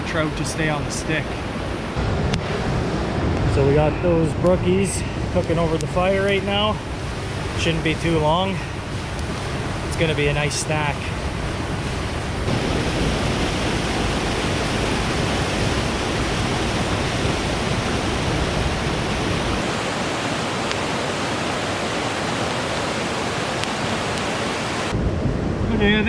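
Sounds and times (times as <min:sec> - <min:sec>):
creek water rushing: 0:19.6 - 0:24.9.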